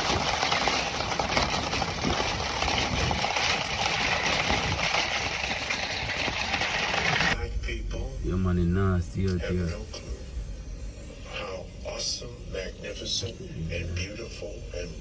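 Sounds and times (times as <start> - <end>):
tyres on snowy road: 0.0 - 7.4.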